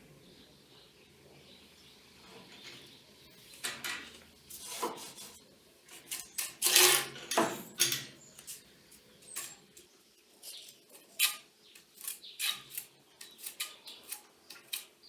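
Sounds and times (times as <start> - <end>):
metal parts clinking and scraping: 2.5 - 9.8.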